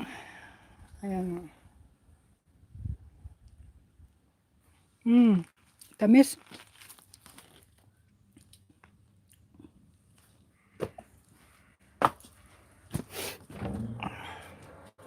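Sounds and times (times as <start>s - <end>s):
person chewing strawberry: 6.6s - 10.2s.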